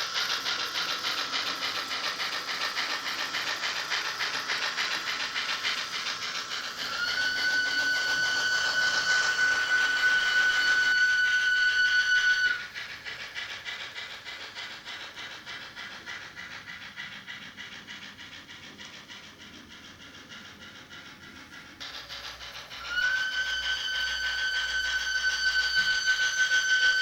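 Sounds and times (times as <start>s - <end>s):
steam locomotive chuffing: 0.0s - 27.0s
steam whistle: 5.8s - 12.8s, 22.7s - 27.0s.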